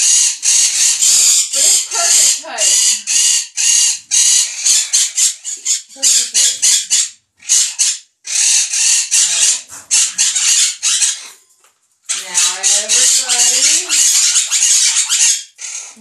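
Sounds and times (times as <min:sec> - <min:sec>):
parrots squawking: 0:00.0 - 0:16.0.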